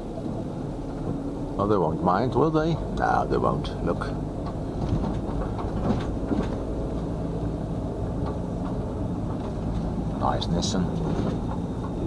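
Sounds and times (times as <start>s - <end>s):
car engine and tyres droning: 0.0s - 12.0s.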